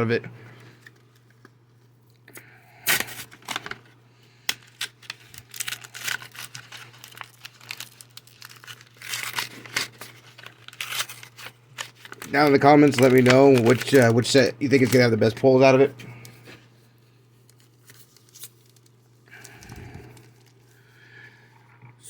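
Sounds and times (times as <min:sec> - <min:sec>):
foil wrappers crinkling: 0:02.4 - 0:21.3.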